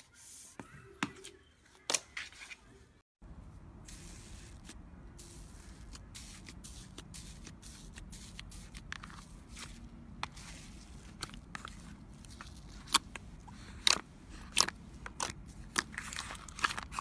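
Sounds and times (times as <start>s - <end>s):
slime squishing and crackling: 5.2s - 17.0s.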